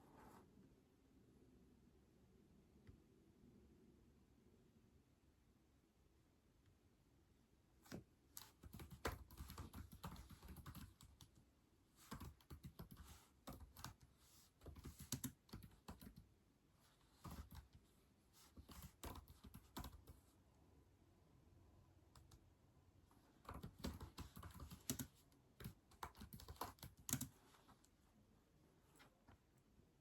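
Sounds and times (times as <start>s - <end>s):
keyboard typing: 7.9s - 11.4s, 12.0s - 16.3s, 17.1s - 17.8s, 18.6s - 20.2s, 22.1s - 22.4s, 23.4s - 27.4s.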